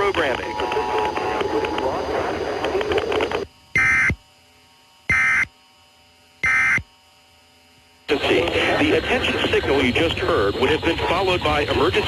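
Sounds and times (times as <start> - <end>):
shrill data bursts: 3.3 - 4.2, 5.1 - 5.5, 6.4 - 6.9.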